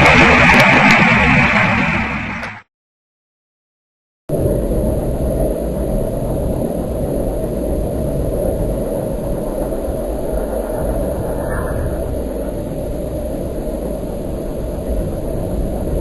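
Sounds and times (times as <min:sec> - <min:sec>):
wind noise on microphone: 0:04.3 - 0:16.0
faint higher sound: 0:10.0 - 0:13.0.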